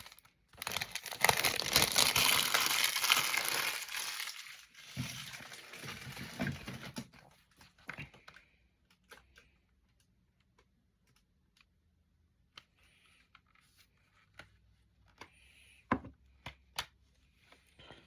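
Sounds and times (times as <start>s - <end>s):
packaging rustling: 0.0s - 7.0s.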